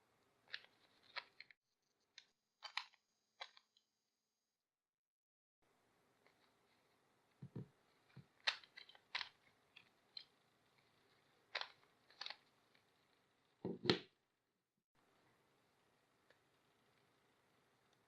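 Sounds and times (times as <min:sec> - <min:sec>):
plastic cube clicks: 0:11.5 - 0:12.4.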